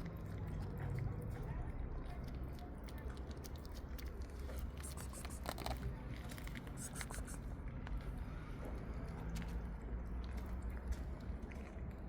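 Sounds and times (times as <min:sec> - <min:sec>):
cats chewing food: 0:00.0 - 0:08.2.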